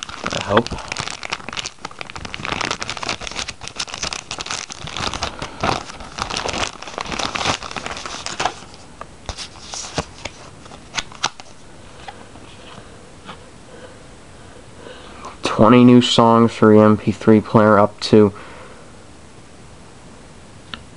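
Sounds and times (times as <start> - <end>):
packaging crinkling and rustling: 0.0 - 12.2.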